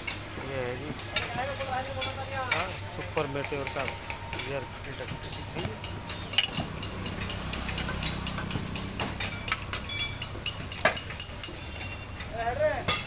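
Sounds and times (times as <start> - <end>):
metallic clicks of hand tools: 5.1 - 12.5.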